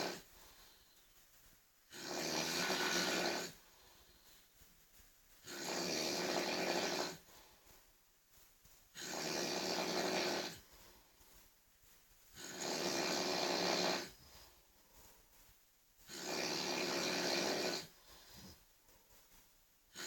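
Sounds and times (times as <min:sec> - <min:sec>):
person snoring loudly: 0:01.9 - 0:03.6, 0:05.4 - 0:07.2, 0:09.0 - 0:10.6, 0:12.4 - 0:14.2, 0:16.1 - 0:18.0.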